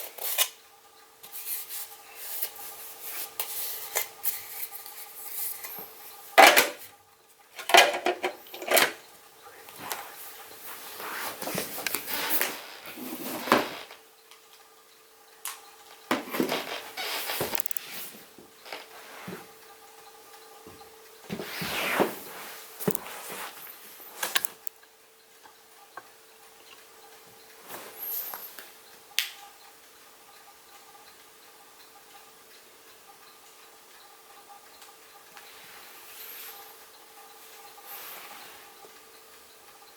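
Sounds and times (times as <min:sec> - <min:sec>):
faint steady hum: 0:00.0 - 0:39.9
plastic parts clunking and rattling: 0:06.4 - 0:06.8, 0:07.6 - 0:09.0
faint regular ticking: 0:24.4 - 0:27.6, 0:28.7 - 0:35.7.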